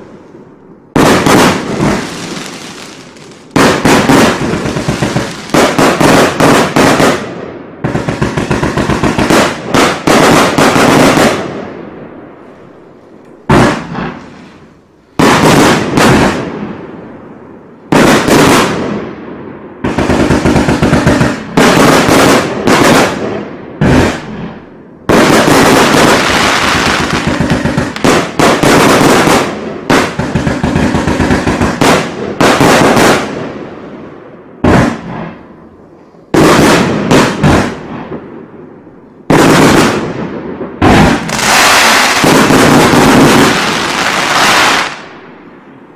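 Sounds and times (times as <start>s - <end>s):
firework pops and bangs: 1.0s - 11.5s, 19.9s - 24.4s, 40.8s - 45.1s.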